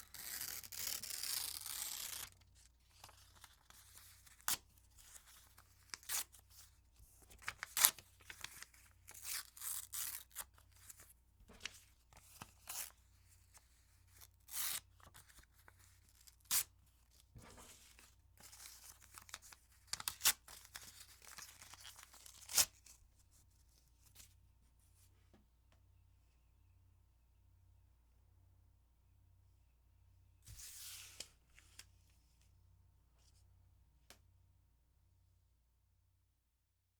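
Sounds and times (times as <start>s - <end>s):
paper being torn by hand: 0.0s - 2.4s, 7.4s - 10.4s, 14.4s - 15.1s.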